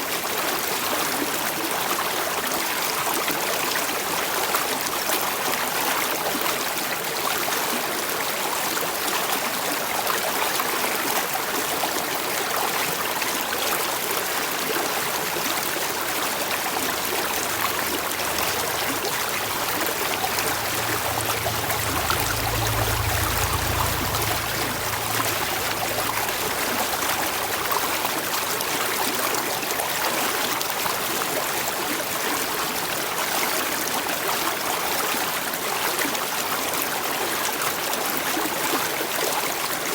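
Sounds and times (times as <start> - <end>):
running water flowing: 12.4 - 31.3
low rumble: 16.4 - 28.7.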